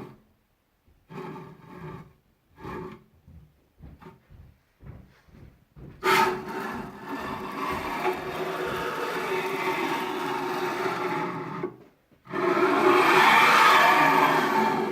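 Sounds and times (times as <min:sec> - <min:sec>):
ball screw grinding harshly: 0:06.0 - 0:14.9.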